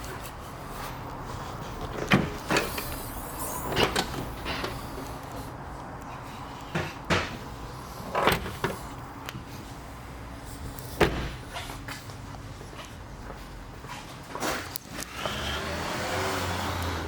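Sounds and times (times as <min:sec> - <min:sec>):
car doors clicking and thumping: 0:01.8 - 0:03.1, 0:08.1 - 0:08.8, 0:11.0 - 0:11.6.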